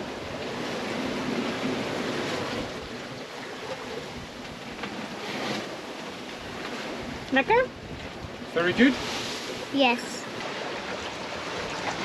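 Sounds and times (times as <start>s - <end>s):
wind and sea rushing: 0.0s - 12.0s
wind noise on microphone: 6.4s - 9.6s.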